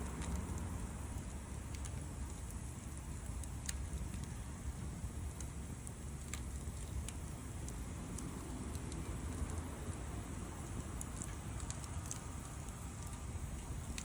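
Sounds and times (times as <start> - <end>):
fire low rumble: 0.0 - 14.0
wood fire crackling: 0.0 - 14.0.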